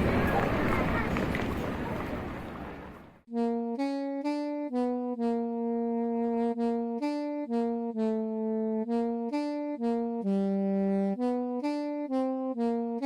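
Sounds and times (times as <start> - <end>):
solo wind instrument melody: 3.3 - 13.0.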